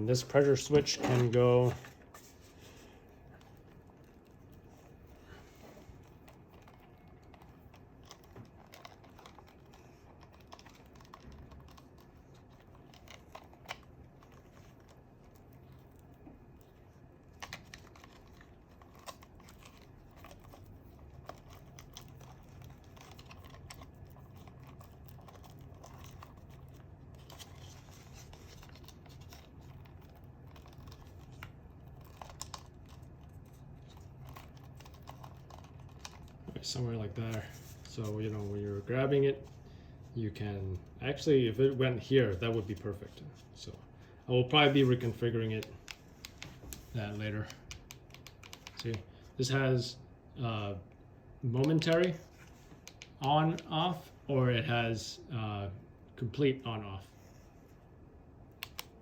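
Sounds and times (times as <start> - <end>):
faint low hum: 0.0 - 59.0
clicks and rustling of small parts: 6.0 - 38.4.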